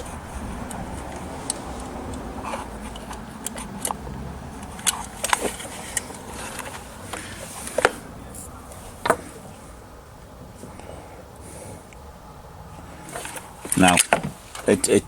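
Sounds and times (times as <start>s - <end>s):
low steady hum: 0.0s - 15.0s.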